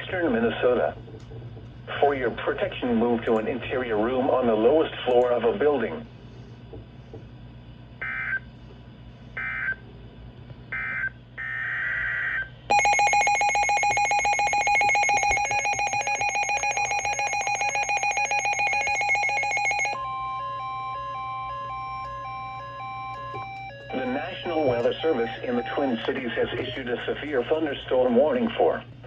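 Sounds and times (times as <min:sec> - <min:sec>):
harsh two-tone attention signal: 0:21.0 - 0:26.8
digital data bursts: 0:23.3 - 0:26.9.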